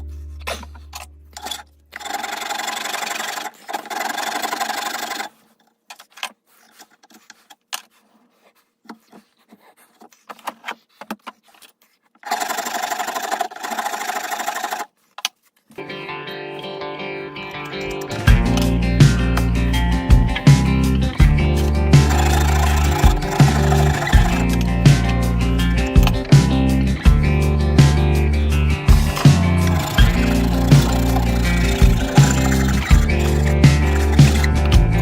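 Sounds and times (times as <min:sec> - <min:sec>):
wood being sanded: 0:21.5 - 0:25.3, 0:28.9 - 0:35.0.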